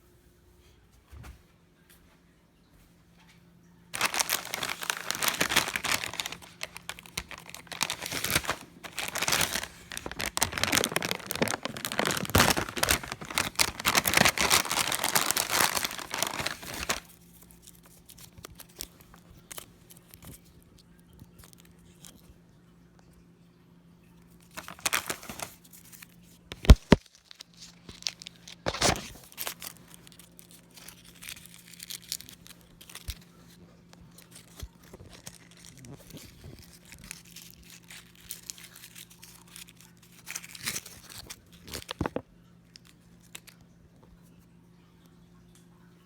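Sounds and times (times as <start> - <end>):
wrapper tearing and crinkling: 4.0 - 20.5, 24.4 - 43.7.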